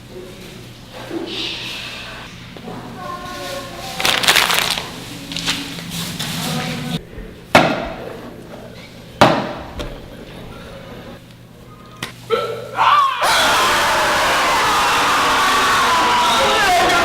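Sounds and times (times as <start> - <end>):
noisy rustling: 3.2 - 7.0.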